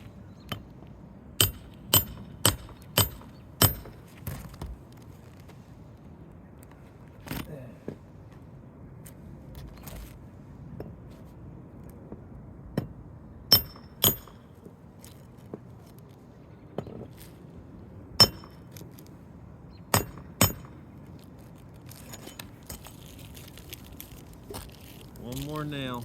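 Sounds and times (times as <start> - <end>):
hammer striking metal tool: 1.4 - 4.0, 13.5 - 14.4, 18.2 - 18.6, 19.9 - 20.7.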